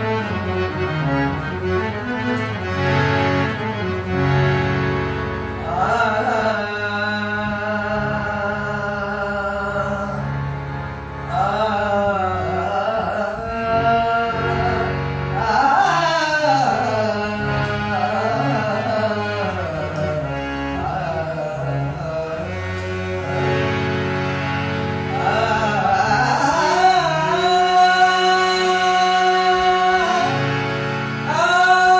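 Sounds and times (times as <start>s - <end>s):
held instrumental notes: 0.0s - 31.9s
man singing: 5.6s - 10.6s, 11.2s - 23.4s, 25.1s - 31.9s.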